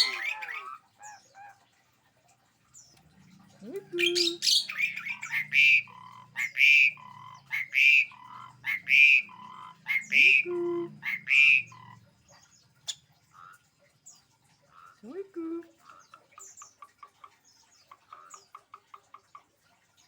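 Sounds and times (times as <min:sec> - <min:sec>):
starling calling: 0:00.0 - 0:01.6, 0:03.6 - 0:12.1.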